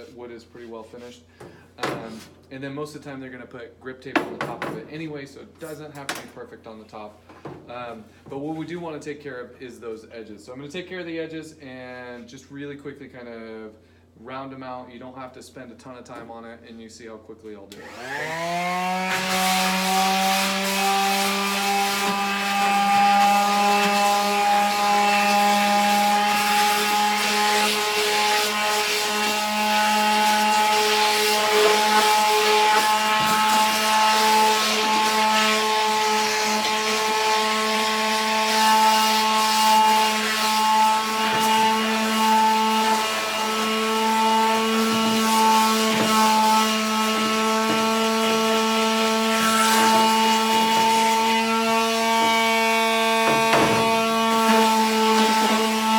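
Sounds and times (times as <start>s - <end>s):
electric sander motor hum: 17.8s - 55.9s
sandpaper rubbing on wood: 19.0s - 55.9s.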